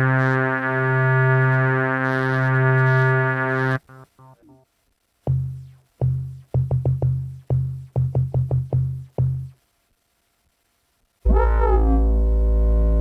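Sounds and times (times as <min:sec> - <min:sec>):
synthesizer bass notes: 0:11.3 - 0:13.0.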